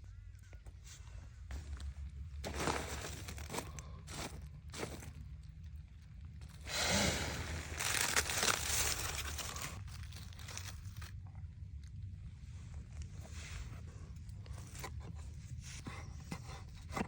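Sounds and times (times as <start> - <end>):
crinkling and tearing handling noise: 2.4 - 12.0.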